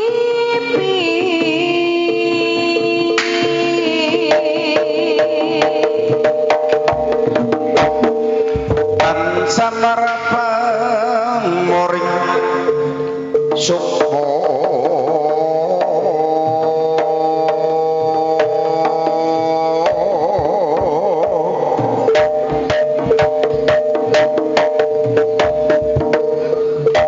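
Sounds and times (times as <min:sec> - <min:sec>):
hand drum strokes: 0:02.6 - 0:27.0
gamelan music: 0:05.2 - 0:16.6, 0:20.8 - 0:27.0.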